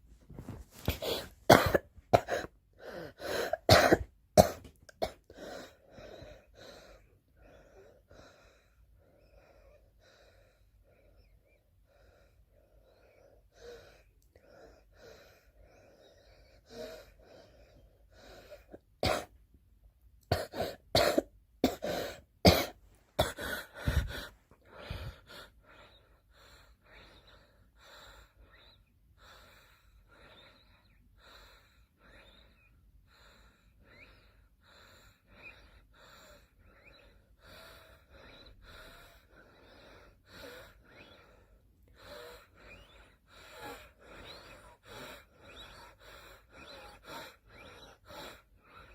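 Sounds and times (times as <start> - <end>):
girl coughing: 0.9 - 2.5, 3.4 - 5.2, 19.0 - 19.3, 20.3 - 24.1
breaths: 23.2 - 48.9.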